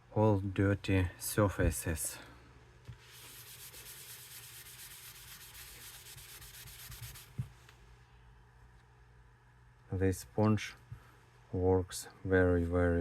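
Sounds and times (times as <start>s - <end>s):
sponge rubbing plastic: 3.0s - 7.5s.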